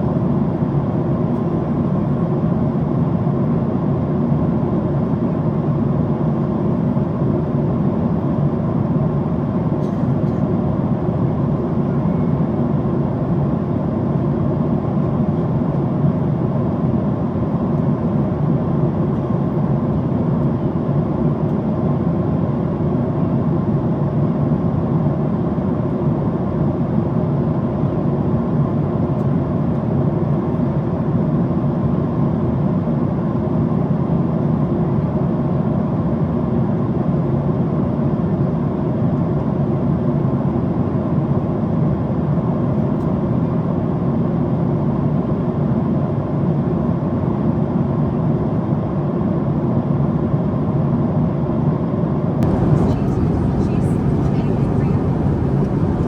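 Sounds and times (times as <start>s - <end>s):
airplane cabin noise: 52.4s - 56.0s.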